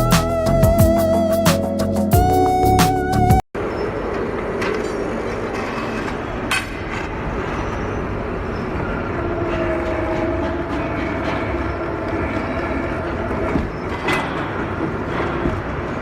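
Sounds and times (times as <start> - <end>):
background music: 0.0 - 3.4.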